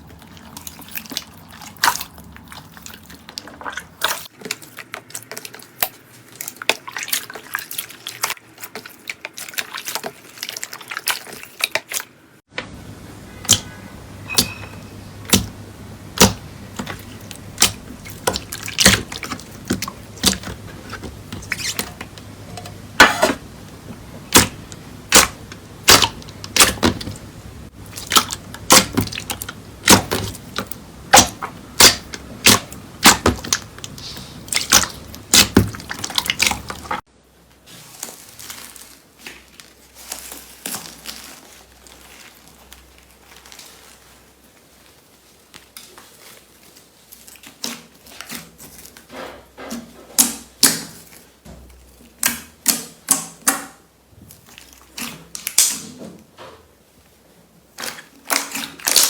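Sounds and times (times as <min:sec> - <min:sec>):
wet pops and clicks: 0:28.0 - 0:37.0.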